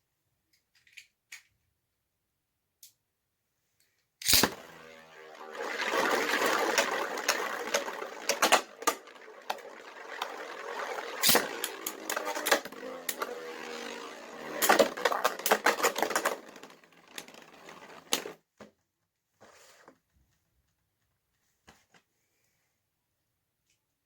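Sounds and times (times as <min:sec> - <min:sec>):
spinning tops clacking together: 0:04.2 - 0:18.4
spinning tops scraping whir: 0:04.2 - 0:18.4.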